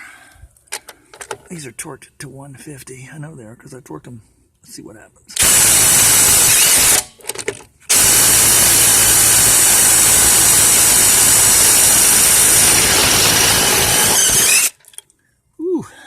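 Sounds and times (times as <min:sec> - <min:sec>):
cordless impact driver hammering: 0:05.4 - 0:07.2, 0:07.9 - 0:14.8.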